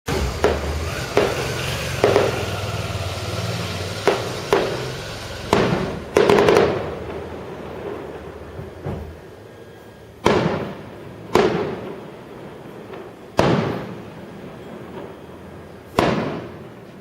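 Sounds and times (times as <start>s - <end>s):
fireworks bangs echoing: 0.1s - 17.0s.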